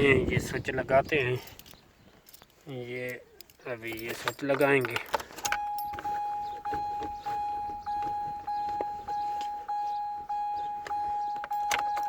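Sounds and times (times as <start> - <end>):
car warning chime beeping: 5.4 - 12.0.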